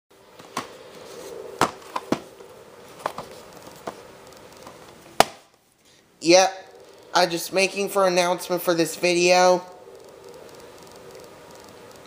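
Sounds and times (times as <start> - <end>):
steady low hum: 0.1 - 12.0.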